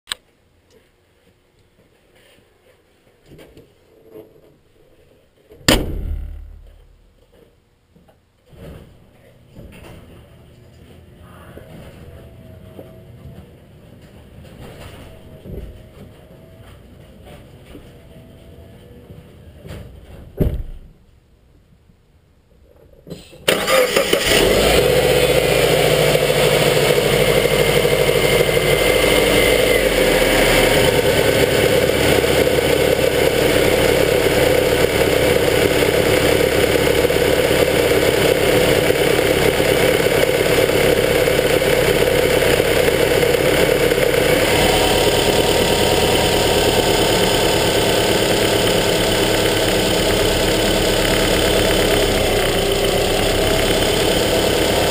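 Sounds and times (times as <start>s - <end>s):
car engine idling: 5.7s - 7.4s, 23.9s - 54.9s
car engine starting: 23.5s - 54.9s.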